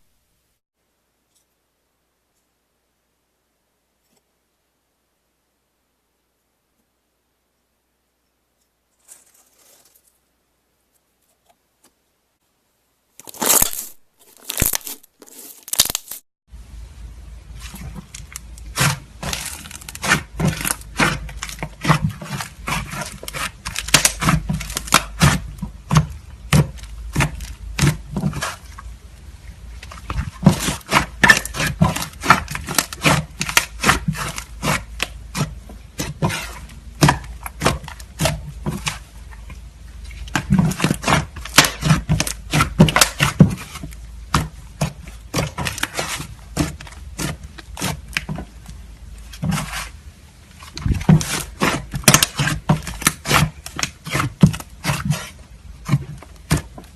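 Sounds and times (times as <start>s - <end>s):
slime crackling and popping: 13.2s - 16.2s, 17.5s - 28.6s, 29.8s - 39.0s, 40.2s - 44.6s, 50.6s - 56.7s.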